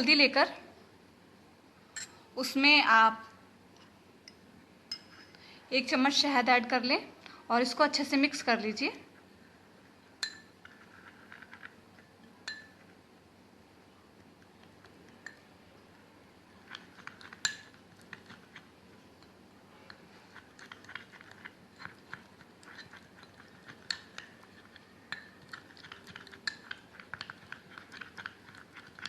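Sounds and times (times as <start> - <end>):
spoon clinking against bowl: 1.9 - 2.2, 4.3 - 5.4, 10.2 - 10.7, 12.4 - 12.9, 15.1 - 15.5, 16.7 - 18.4, 19.2 - 20.0, 20.6 - 29.0.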